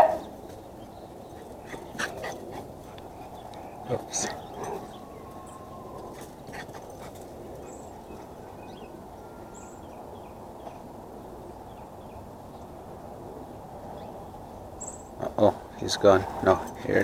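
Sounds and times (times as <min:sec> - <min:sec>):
low outdoor background noise: 0:00.0 - 0:17.0
small birds chirping: 0:00.0 - 0:17.0.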